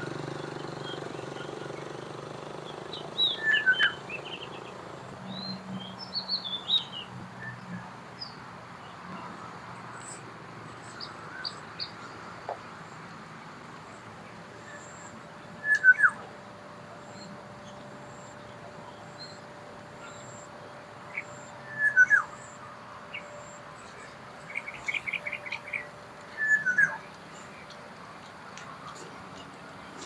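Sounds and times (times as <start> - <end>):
faint high bird chirps: 2.6 - 4.7, 14.6 - 16.3, 17.0 - 27.8
bird whistled downward calls: 3.2 - 4.0, 15.6 - 16.2, 21.2 - 22.4, 24.6 - 27.0.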